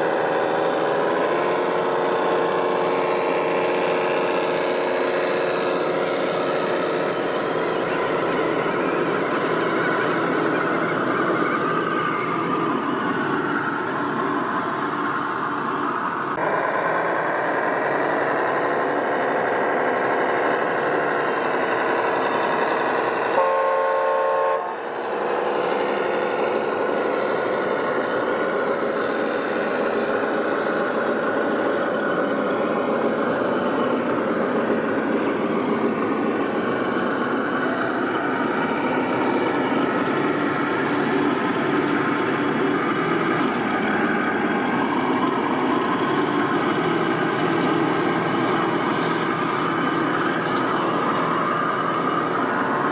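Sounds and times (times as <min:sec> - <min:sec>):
toy engine running: 0:00.0 - 0:23.4, 0:24.6 - 0:52.9
horn sounding: 0:23.4 - 0:24.8.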